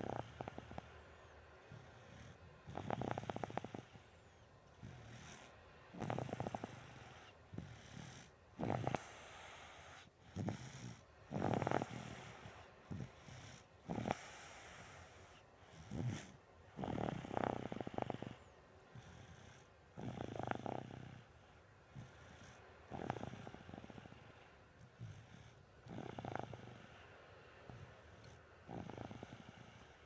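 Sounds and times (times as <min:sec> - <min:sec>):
fluttering rattling snore: 0:00.0 - 0:00.8, 0:02.2 - 0:04.0, 0:04.8 - 0:14.7, 0:15.8 - 0:18.5, 0:20.0 - 0:21.3, 0:22.2 - 0:24.2, 0:25.8 - 0:26.9, 0:28.2 - 0:30.0.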